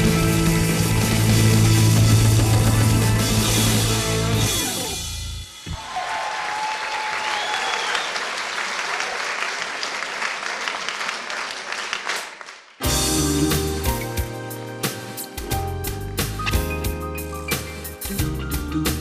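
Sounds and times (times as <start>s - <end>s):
rock band playing: 0.0s - 5.8s, 12.8s - 19.0s
audience applauding: 5.7s - 12.8s.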